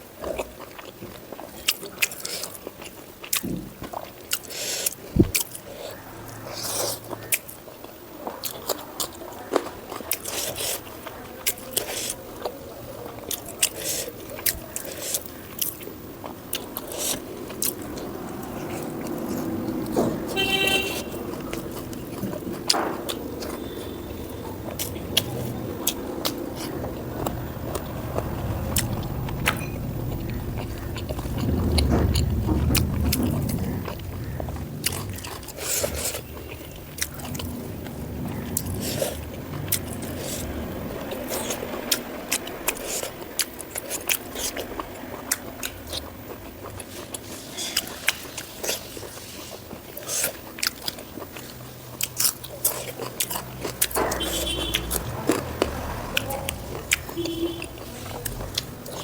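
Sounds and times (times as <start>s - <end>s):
person chewing food: 0.0s - 59.0s
low rumble: 21.1s - 46.8s, 53.6s - 59.0s.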